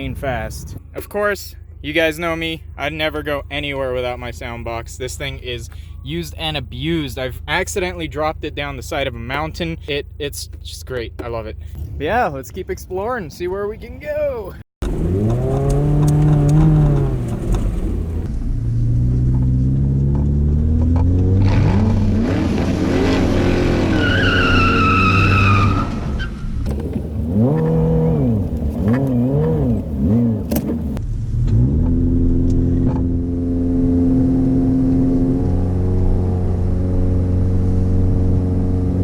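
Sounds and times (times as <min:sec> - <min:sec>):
car engine revving: 0:14.8 - 0:39.0.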